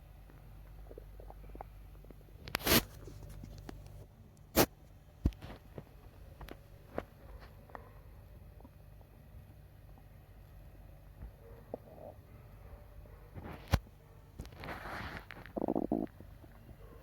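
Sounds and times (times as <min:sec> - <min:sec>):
stomach gurgling and popping: 0:00.2 - 0:04.0, 0:11.2 - 0:12.3, 0:13.4 - 0:16.8.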